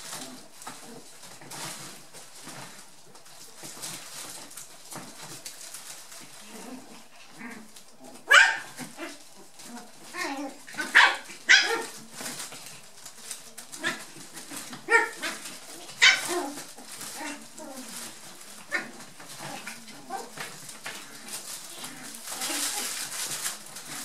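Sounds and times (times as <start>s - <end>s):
puppies playing: 0.0s - 24.0s
high puppy barks: 8.3s - 8.8s, 10.8s - 12.0s, 16.0s - 16.4s.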